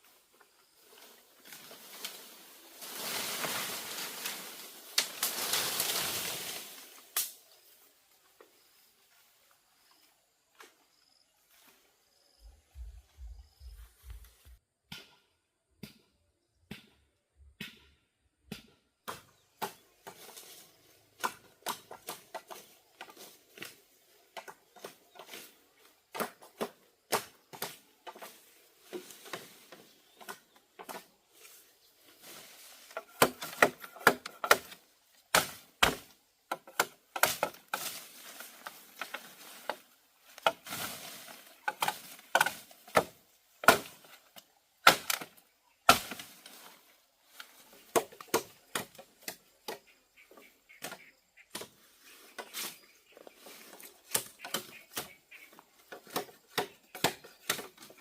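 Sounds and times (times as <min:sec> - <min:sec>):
knocks and chops on wood: 0:14.9 - 0:17.0, 0:17.6 - 0:19.8, 0:33.0 - 0:37.6, 0:41.8 - 0:44.0, 0:56.0 - 0:57.9.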